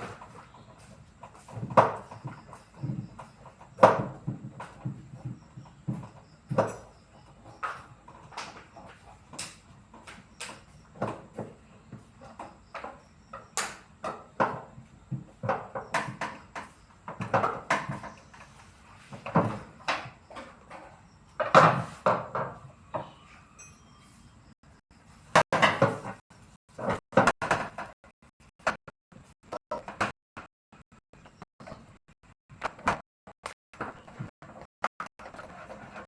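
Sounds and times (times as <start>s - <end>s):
washing machine parts knocking: 26.8s - 28.8s.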